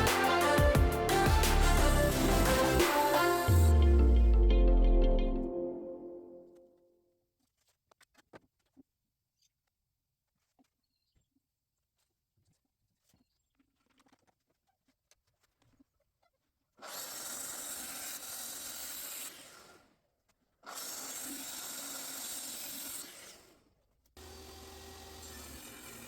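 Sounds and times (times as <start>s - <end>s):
low hum: 0.0s - 6.4s
power tool motor running: 24.2s - 26.0s.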